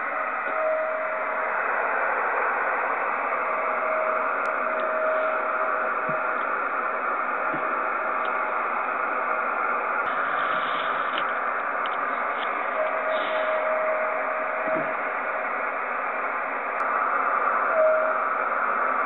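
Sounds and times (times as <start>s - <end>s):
radio receiver hiss: 0.0s - 19.0s
steady whistling tone: 0.0s - 19.0s.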